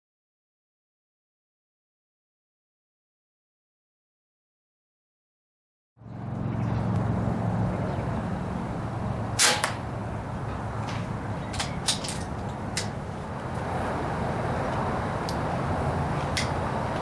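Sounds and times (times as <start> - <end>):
air rifle shot crack: 9.4 - 9.8.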